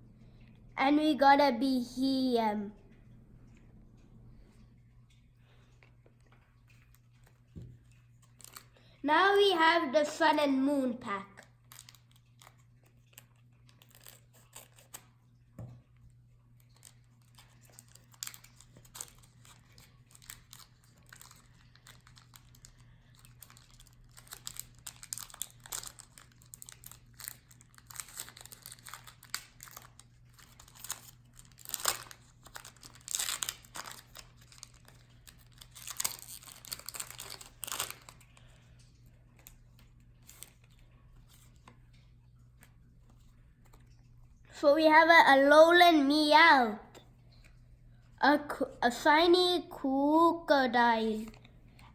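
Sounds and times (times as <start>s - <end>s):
foil pack crinkling and tearing: 7.2s - 9.0s, 11.2s - 15.4s, 16.6s - 41.7s.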